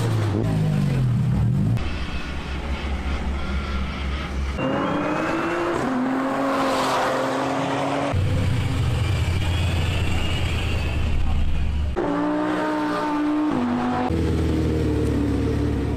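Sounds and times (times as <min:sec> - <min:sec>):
low engine drone: 0:00.0 - 0:06.5, 0:07.4 - 0:12.1
race car accelerating: 0:03.4 - 0:15.9.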